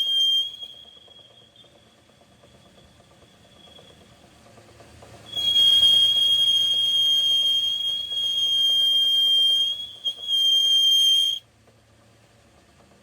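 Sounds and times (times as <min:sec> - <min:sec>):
high-pitched squeal: 0:00.0 - 0:01.4, 0:05.3 - 0:11.4.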